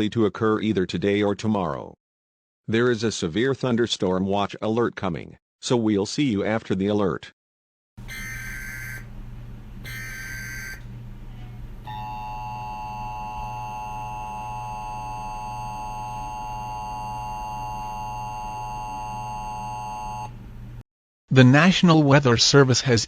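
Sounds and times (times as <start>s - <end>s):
dual-tone alert signal: 8.0s - 9.0s, 9.9s - 10.8s, 11.9s - 20.3s
low steady hum: 8.0s - 20.8s.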